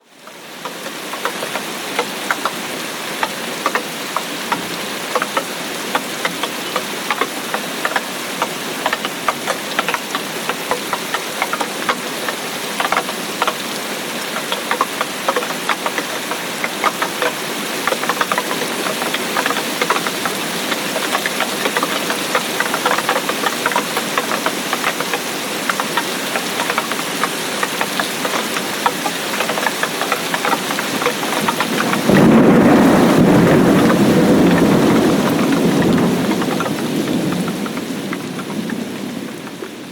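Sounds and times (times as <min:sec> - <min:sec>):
steady rain: 0:00.0 - 0:39.9
raindrops tapping: 0:00.2 - 0:39.9.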